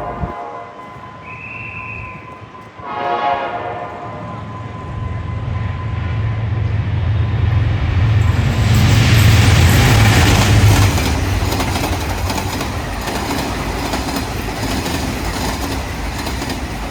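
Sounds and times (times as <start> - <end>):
train horn blast: 0.0 - 6.4
low rumble of approaching train: 0.0 - 16.9
short high whistle: 1.2 - 2.6.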